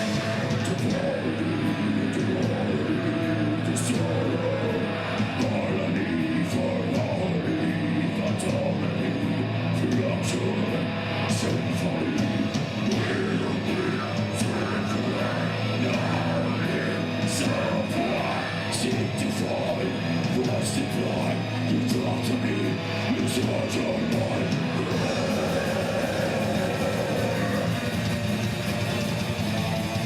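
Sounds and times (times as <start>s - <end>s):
heavy rock music: 0.0s - 30.0s.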